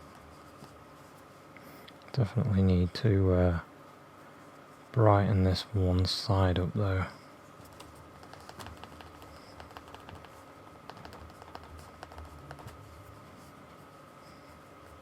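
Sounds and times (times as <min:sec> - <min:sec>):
paintbrush tapping on canvas: 0:07.8 - 0:13.0.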